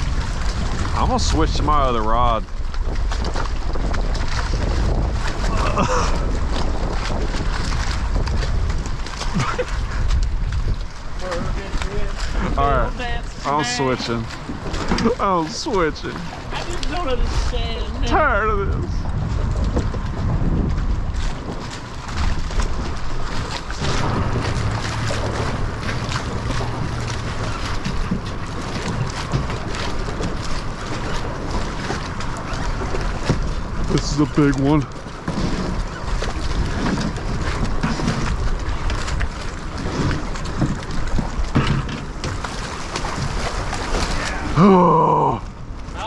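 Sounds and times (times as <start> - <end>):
wind buffeting microphone: 0.0 - 46.0
steady low hum: 21.8 - 32.3.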